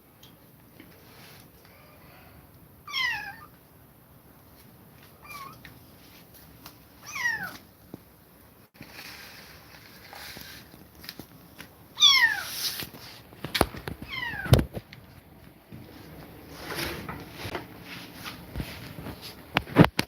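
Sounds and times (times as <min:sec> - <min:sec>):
kitten meowing: 0:02.9 - 0:03.5, 0:05.2 - 0:05.6, 0:07.0 - 0:07.6, 0:12.0 - 0:12.6, 0:14.1 - 0:14.6.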